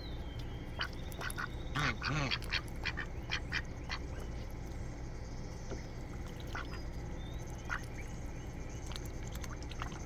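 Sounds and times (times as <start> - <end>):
ducks quacking: 0.8 - 4.2.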